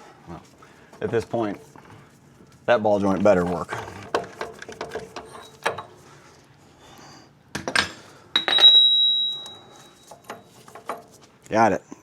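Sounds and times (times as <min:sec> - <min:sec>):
high metallic ring: 0:08.4 - 0:10.6.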